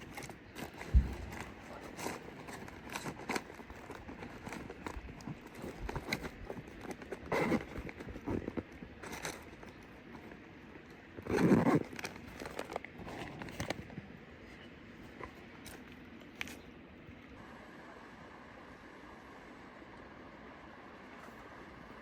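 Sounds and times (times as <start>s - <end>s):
light clicks and rustles: 0.0s - 16.7s.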